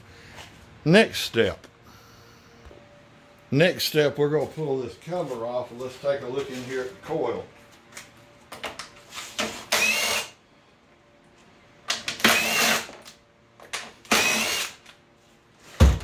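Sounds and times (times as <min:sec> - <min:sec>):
cordless drill running: 0:09.7 - 0:10.4, 0:12.2 - 0:12.9, 0:14.1 - 0:14.8.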